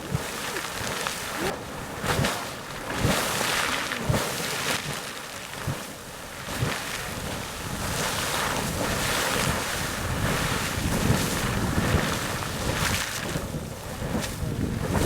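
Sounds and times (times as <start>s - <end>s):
geyser hissing and splashing: 0.0s - 15.0s
wind buffeting microphone: 5.6s - 15.0s.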